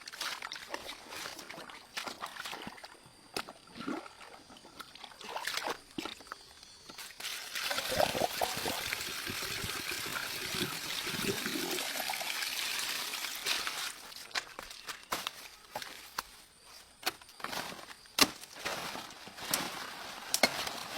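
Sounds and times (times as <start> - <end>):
water trickling and splashing: 0.0 - 15.0
water rushing: 7.6 - 13.7.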